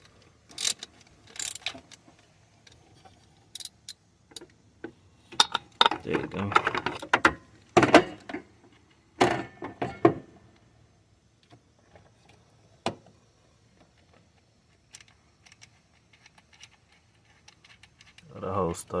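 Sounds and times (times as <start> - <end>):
ratchet clicking on metal: 0.0 - 2.0.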